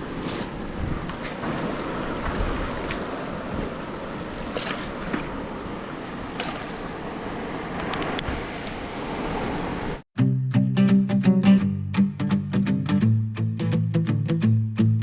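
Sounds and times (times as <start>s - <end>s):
water splashes: 0.0s - 10.0s.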